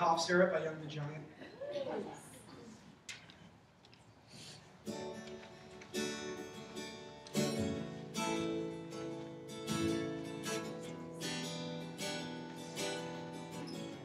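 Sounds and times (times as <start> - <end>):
acoustic guitar strumming chords: 4.9 - 14.0.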